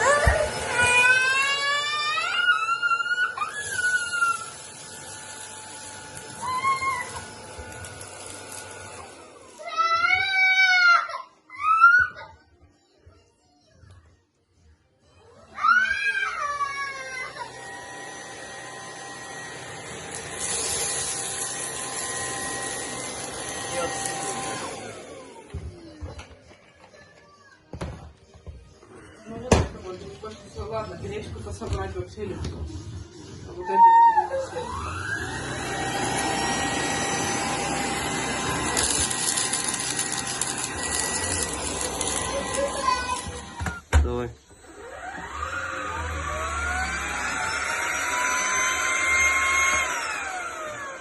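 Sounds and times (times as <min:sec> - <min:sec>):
vacuum motor whine: 0:00.0 - 0:09.6, 0:16.8 - 0:25.6, 0:34.4 - 0:51.0.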